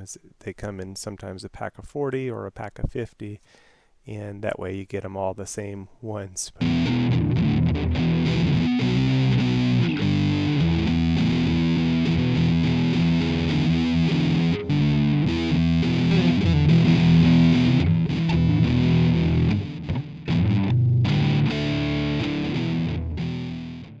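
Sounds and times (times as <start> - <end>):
rock music with distorted guitar: 6.6 - 24.0.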